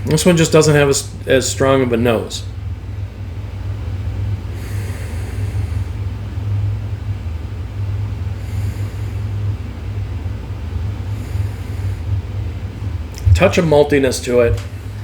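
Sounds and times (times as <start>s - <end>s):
low room noise rumble: 0.0s - 15.0s.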